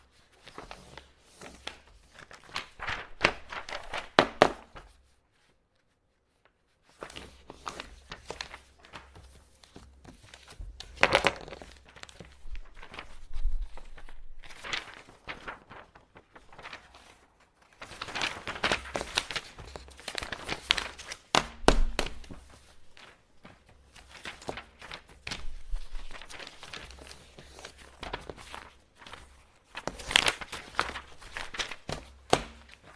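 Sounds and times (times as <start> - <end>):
paper rustling and creasing: 0.0 - 32.9.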